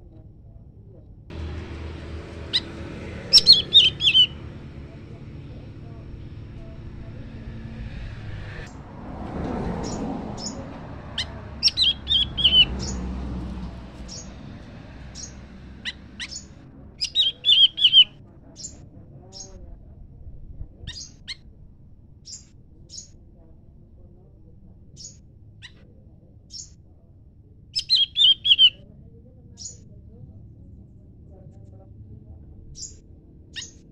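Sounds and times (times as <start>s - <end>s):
bird high chip notes: 2.1s - 4.7s.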